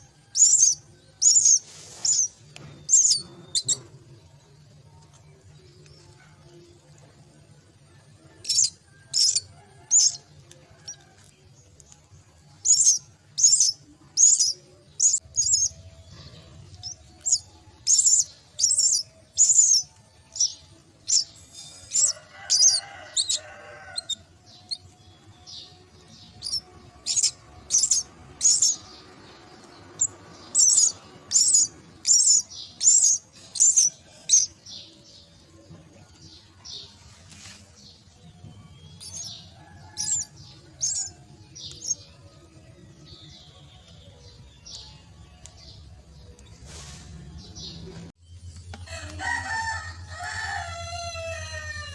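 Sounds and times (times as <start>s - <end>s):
chicks high-pitched begging calls: 0.4s - 2.3s, 8.3s - 11.0s, 12.6s - 35.0s, 38.9s - 45.9s, 48.9s - 51.9s.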